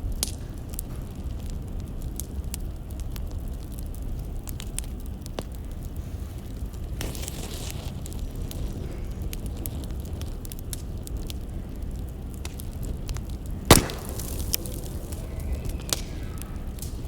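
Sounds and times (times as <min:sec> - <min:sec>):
low rumble of flames: 0:00.0 - 0:17.0
wood fire crackling: 0:00.0 - 0:17.0
loud sharp pop: 0:13.7 - 0:16.2.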